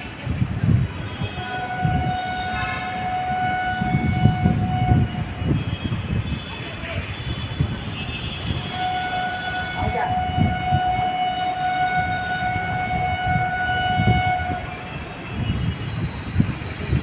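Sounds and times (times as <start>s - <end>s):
train rumbling on rails: 0.0s - 17.0s
locomotive horn: 1.1s - 6.6s, 7.2s - 15.7s.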